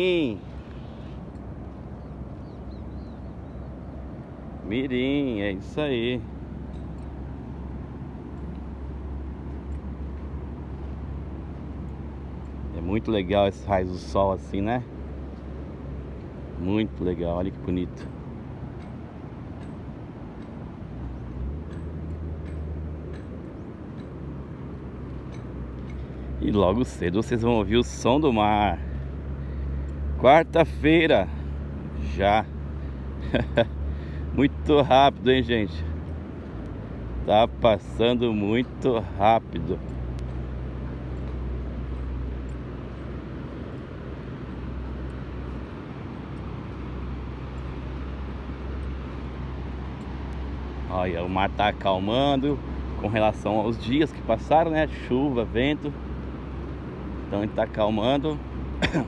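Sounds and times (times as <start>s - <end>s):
low steady rumble: 0.0s - 59.0s
faint ticks: 39.8s - 50.5s.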